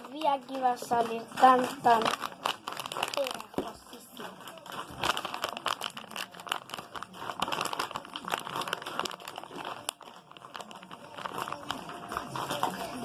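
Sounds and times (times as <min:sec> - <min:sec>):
sticky slime crackling: 0:00.0 - 0:13.0.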